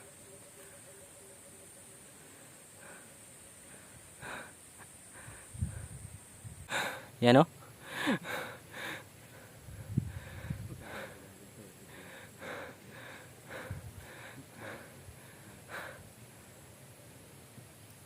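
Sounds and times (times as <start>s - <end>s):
man breathing hard: 2.2s - 16.2s.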